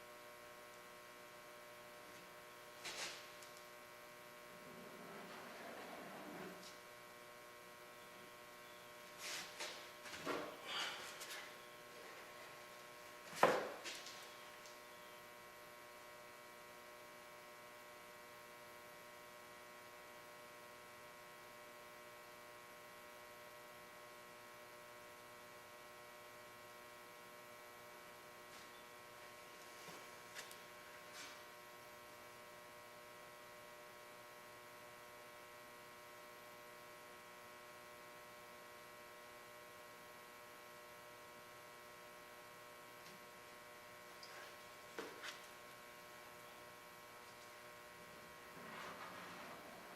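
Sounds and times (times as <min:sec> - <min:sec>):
steady electrical hum: 0:00.0 - 0:49.9
faint brief scrapes: 0:09.2 - 0:09.8.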